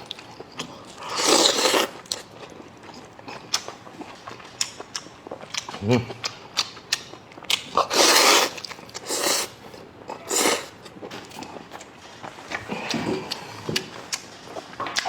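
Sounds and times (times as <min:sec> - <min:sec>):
person eating noodles: 0:00.0 - 0:11.9
chewing clicks and mouth sounds: 0:00.0 - 0:15.0.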